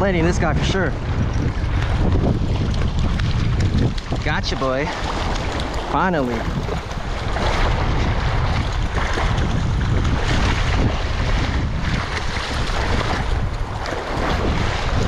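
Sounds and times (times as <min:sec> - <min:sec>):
wind buffeting microphone: 0:00.0 - 0:15.0
ocean surf: 0:03.3 - 0:15.0.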